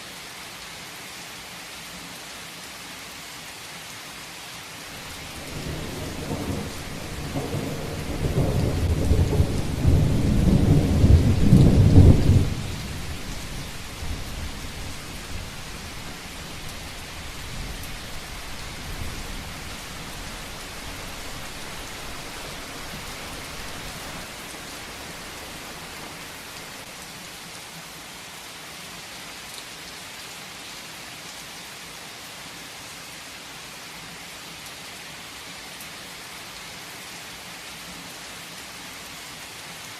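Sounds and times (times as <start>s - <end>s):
heavy rain: 0.0s - 39.9s
thunder rumbling: 5.0s - 26.8s.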